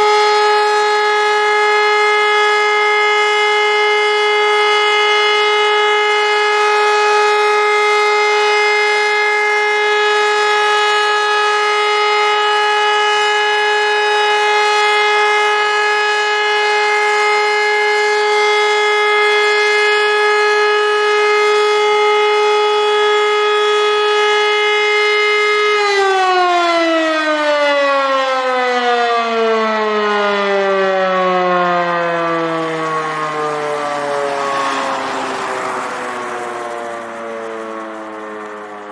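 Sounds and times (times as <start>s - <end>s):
electric motor siren: 0.0s - 38.9s.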